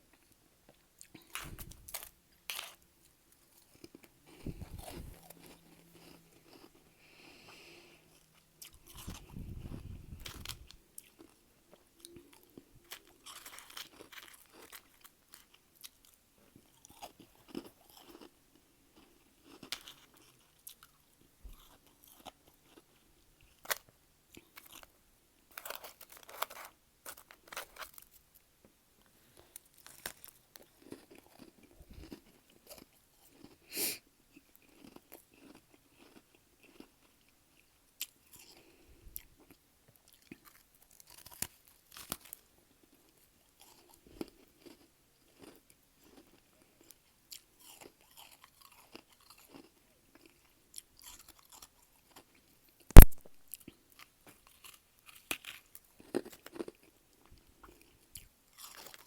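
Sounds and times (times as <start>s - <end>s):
frost being chewed: 0.1s - 24.9s, 29.3s - 33.7s, 34.3s - 59.0s.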